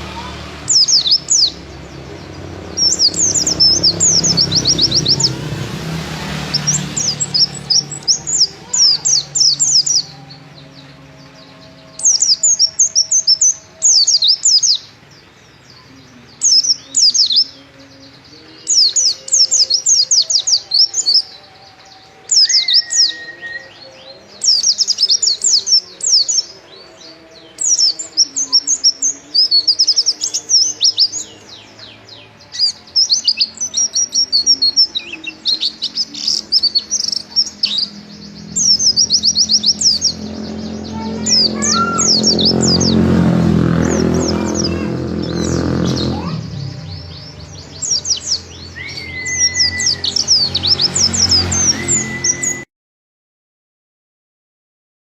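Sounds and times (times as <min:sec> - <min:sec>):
bird singing rapid high notes: 0:00.0 - 0:52.7.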